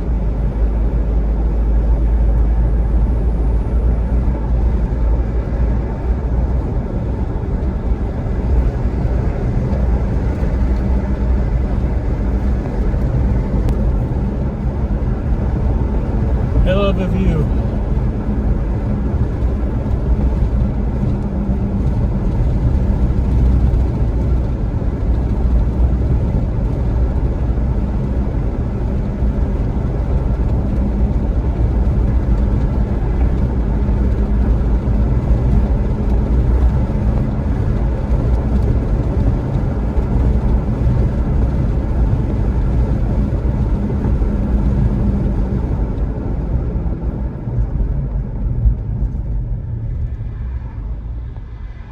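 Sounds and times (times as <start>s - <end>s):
vehicle engine and road noise: 0.0s - 51.9s.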